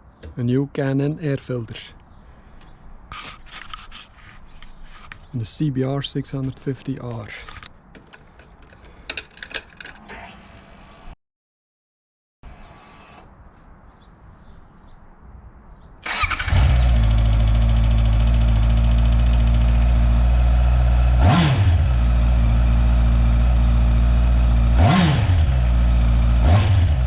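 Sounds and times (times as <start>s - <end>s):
motorcycle engine starting and idling: 16.0s - 27.0s
engine throttle blips: 16.1s - 21.9s.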